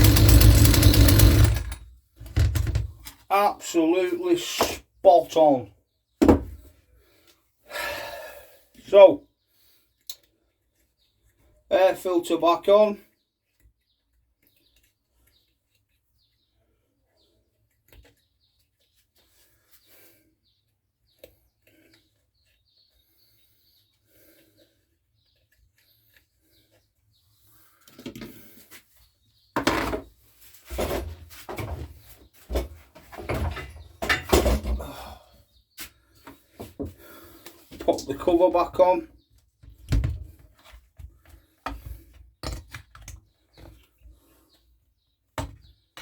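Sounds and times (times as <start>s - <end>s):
plastic parts knocking and clicking: 0.0s - 3.2s, 39.6s - 43.9s.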